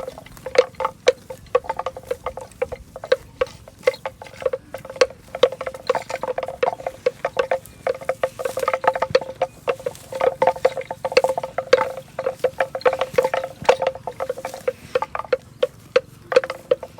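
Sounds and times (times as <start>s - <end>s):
cow bell clanking: 0.0s - 16.9s.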